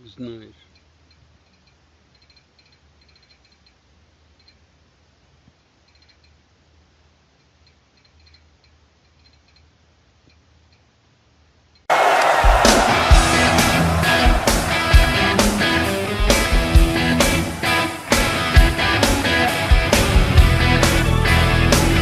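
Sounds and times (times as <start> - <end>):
soft ticks and clicks: 0.6 - 3.8, 4.4 - 4.6, 5.5 - 6.4, 7.4 - 10.9.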